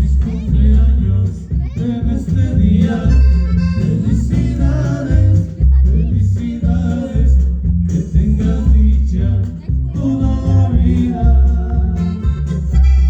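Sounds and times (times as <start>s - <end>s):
heavy repeating bass line: 0.0s - 13.0s
person singing: 0.0s - 13.0s
accordion-like melody: 1.6s - 6.4s, 9.0s - 13.0s.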